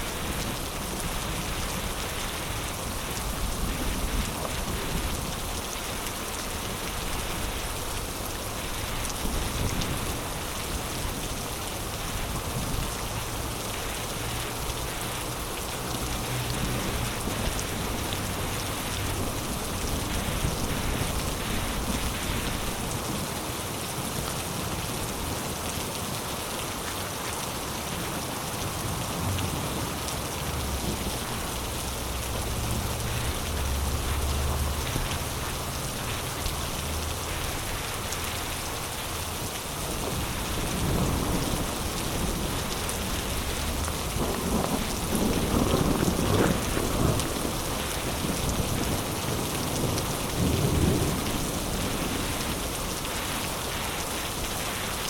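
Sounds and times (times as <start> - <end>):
heavy rain pouring: 0.0 - 55.0
thunder rumbling: 39.9 - 53.3.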